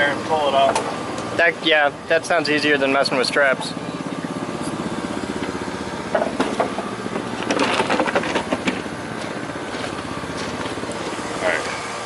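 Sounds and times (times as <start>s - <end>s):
small engine running: 0.0s - 12.0s
knocks and clatter: 6.1s - 10.8s.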